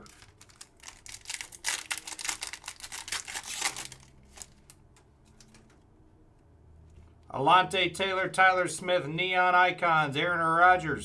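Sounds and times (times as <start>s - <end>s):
card pack wrapper crinkling: 0.0s - 5.6s.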